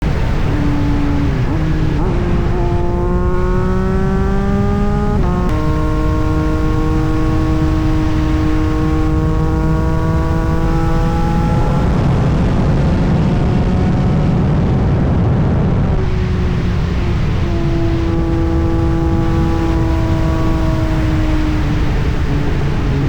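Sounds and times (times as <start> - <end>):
constant rushing noise: 0.0 - 23.0
motorcycle engine revving: 0.0 - 23.0.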